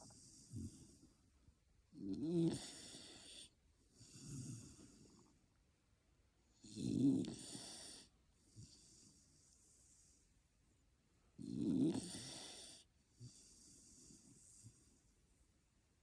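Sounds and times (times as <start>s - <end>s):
quiet breaths: 0.0s - 16.0s
person snoring: 11.4s - 12.8s.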